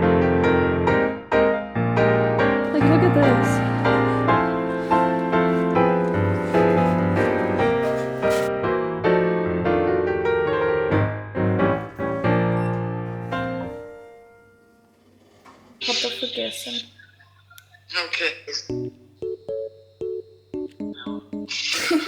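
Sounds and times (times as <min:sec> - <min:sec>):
piano music: 0:02.6 - 0:14.7, 0:18.7 - 0:22.0.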